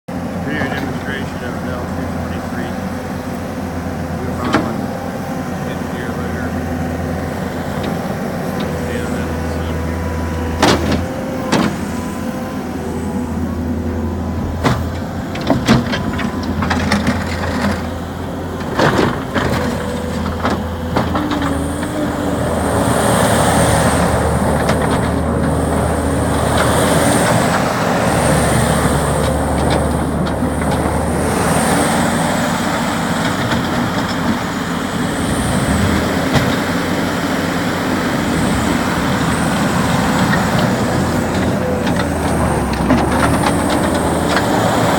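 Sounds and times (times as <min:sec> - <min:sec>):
diesel engine running: 0:00.1 - 0:44.9
sharp knocks: 0:10.6 - 0:11.9.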